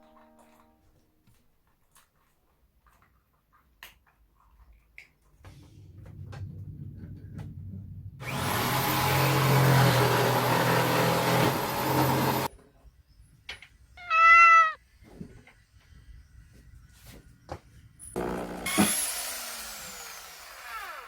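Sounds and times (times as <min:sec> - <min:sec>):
machine motor whining: 0:08.2 - 0:12.5, 0:18.2 - 0:21.0
cat meowing: 0:14.0 - 0:14.8.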